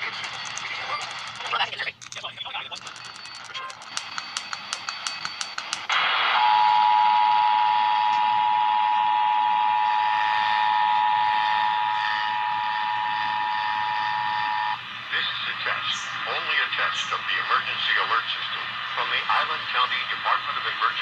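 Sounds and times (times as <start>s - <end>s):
rapid clicks: 0.0s - 5.9s
radio hiss: 15.0s - 21.0s.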